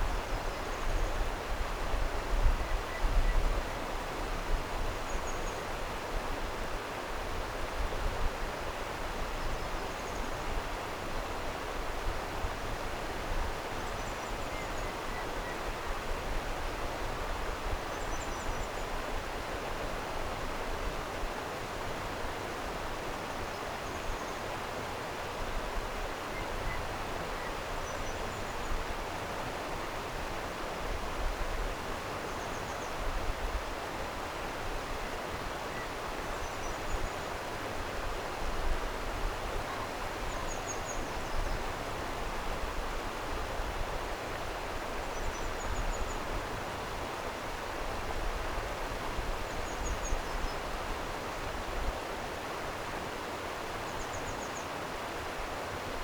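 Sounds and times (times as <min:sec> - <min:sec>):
stream water flowing: 0:33.0 - 0:56.0.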